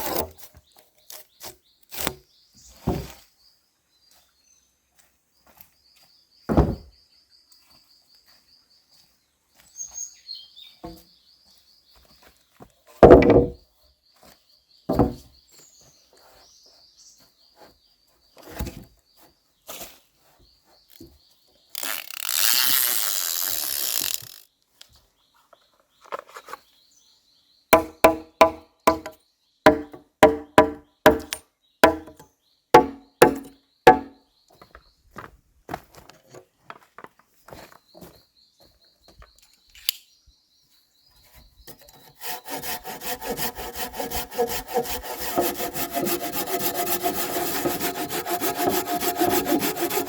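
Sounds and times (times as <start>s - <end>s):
knocks and thuds on wood: 6.5s - 6.9s, 13.0s - 13.6s, 14.9s - 15.3s, 27.8s - 32.2s, 32.8s - 34.2s
ringing chopping strikes: 29.7s - 32.2s, 32.8s - 34.1s.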